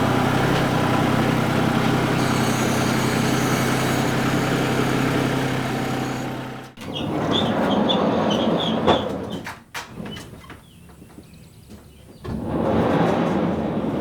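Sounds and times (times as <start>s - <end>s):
low machine hum: 0.0s - 7.1s.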